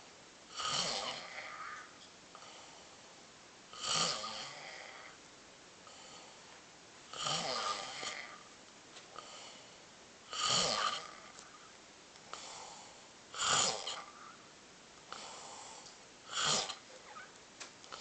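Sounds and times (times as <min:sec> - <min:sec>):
person snoring: 0:00.5 - 0:03.0, 0:03.7 - 0:05.2, 0:07.1 - 0:08.5, 0:09.2 - 0:11.7, 0:12.3 - 0:14.4, 0:15.1 - 0:17.3
soft breathing: 0:01.2 - 0:03.3, 0:05.8 - 0:06.7, 0:07.6 - 0:18.0.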